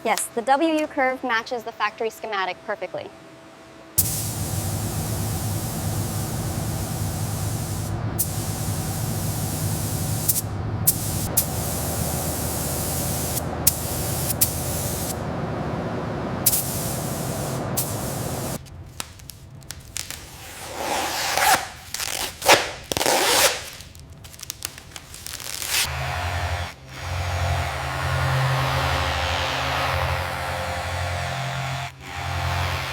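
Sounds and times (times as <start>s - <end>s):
compressed air spraying hiss: 4.0s - 15.2s, 16.4s - 18.6s.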